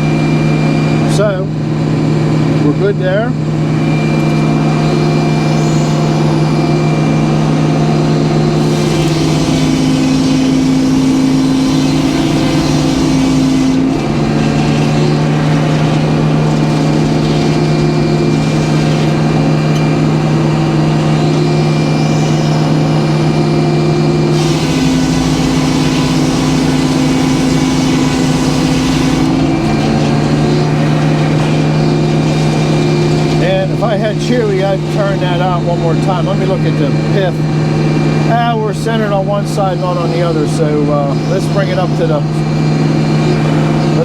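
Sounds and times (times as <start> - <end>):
sawmill engine running: 0.0 - 44.0
saw blade cutting wood: 8.4 - 35.6.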